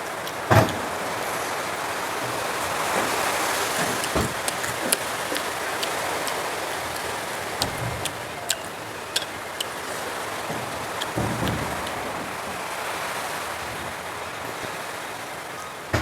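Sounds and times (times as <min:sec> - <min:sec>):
wet mouth smacks and clicks: 0:03.9 - 0:09.8.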